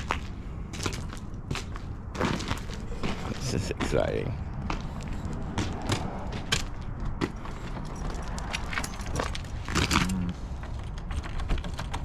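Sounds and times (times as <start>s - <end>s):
keys jangling: 7.3s - 11.8s.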